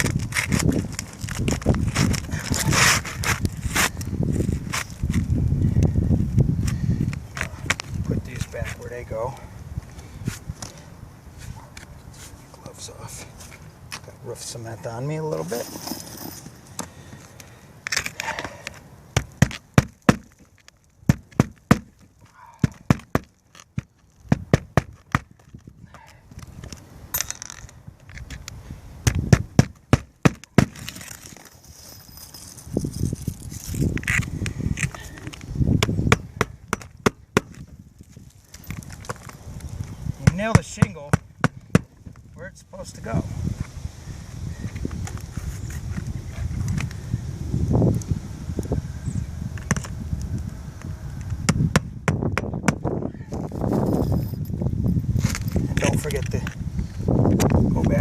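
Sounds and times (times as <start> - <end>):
shingles scuffing: 0.0 - 5.3
tools knocking on roof shingles: 19.2 - 20.4, 21.0 - 25.3, 29.1 - 30.9
hammer knocking on shingle roof: 21.1 - 21.9, 22.6 - 23.3.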